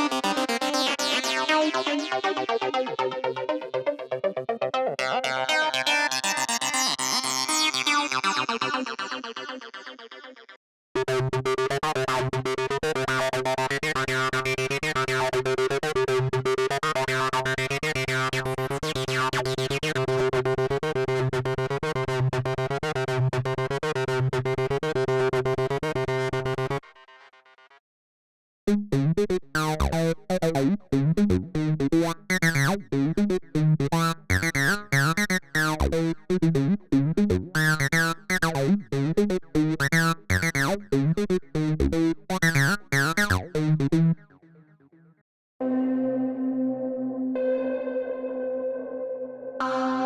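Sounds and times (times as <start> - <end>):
bass synthesizer sequence: 28.7 - 44.2
fast repeating synth notes: 33.8 - 36.9, 37.5 - 43.9.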